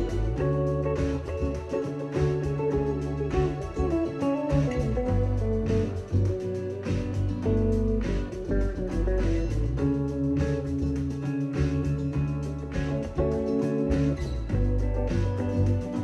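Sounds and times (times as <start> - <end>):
guitar-led instrumental music: 0.0 - 16.0.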